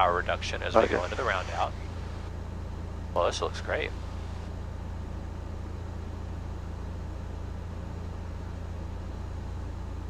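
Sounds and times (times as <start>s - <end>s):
propeller plane engine drone: 0.0s - 10.0s.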